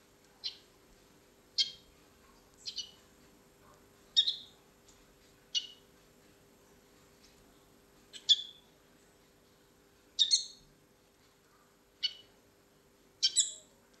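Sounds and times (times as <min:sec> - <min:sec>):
small bird chirping: 0:00.4 - 0:00.7, 0:01.5 - 0:01.9, 0:02.6 - 0:03.0, 0:04.1 - 0:04.6, 0:05.5 - 0:05.8, 0:08.1 - 0:08.7, 0:10.2 - 0:10.7, 0:12.0 - 0:12.4, 0:13.2 - 0:13.8.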